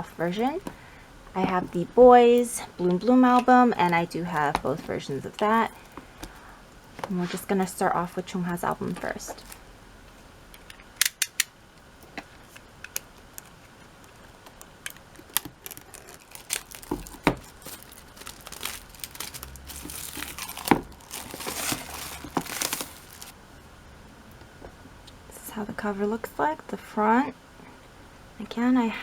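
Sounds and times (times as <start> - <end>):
sharp handling clicks: 10.6 - 11.6
plastic wrap crinkling: 12.4 - 23.4.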